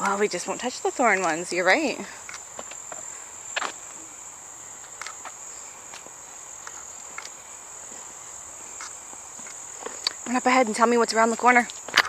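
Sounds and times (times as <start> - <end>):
insects chirring: 0.0 - 12.0
light clicks and rustles: 4.8 - 8.1.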